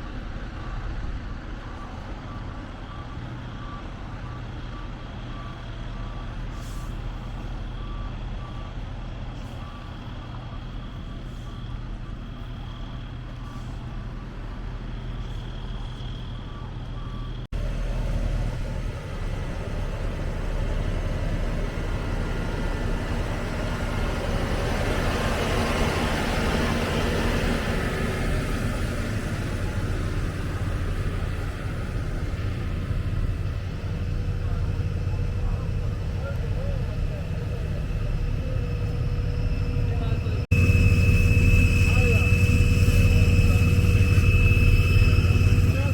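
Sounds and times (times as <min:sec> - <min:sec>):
truck engine running: 0:00.0 - 0:45.9
reversing beeper: 0:01.6 - 0:14.4, 0:15.2 - 0:45.9
rushing noise: 0:37.3 - 0:45.9.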